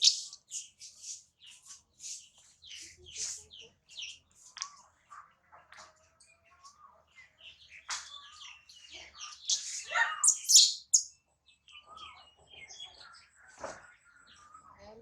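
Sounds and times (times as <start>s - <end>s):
baby monkey squeaking and chirping: 0.0s - 0.5s, 9.2s - 11.1s.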